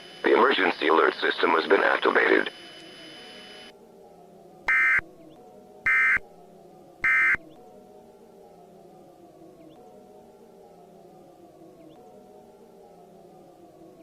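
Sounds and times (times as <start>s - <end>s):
warbling two-tone digital data bursts: 4.7s - 5.0s, 5.9s - 6.2s, 7.0s - 7.4s.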